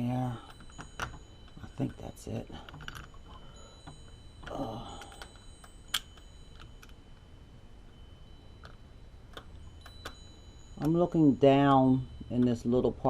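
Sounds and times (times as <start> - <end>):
doorknob and lock hardware clicking: 0.4 - 2.0, 2.6 - 3.2.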